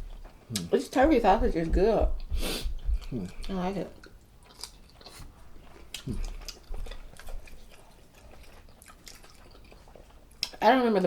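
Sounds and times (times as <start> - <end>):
close-up chewing: 0.0 - 10.6
mouth clicks and smacks: 5.9 - 7.6.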